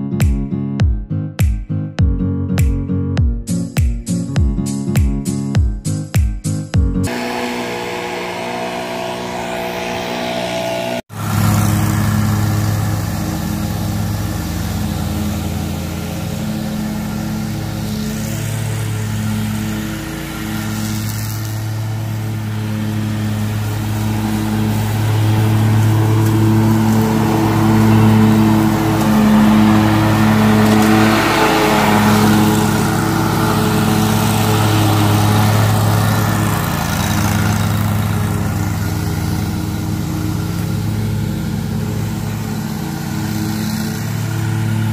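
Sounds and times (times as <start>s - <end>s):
background music: 0.0s - 7.4s
lawn mower engine running: 7.0s - 44.9s.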